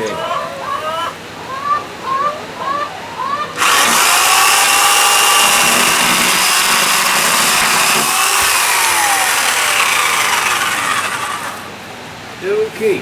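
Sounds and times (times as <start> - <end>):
power saw cutting bamboo: 3.6 - 11.8.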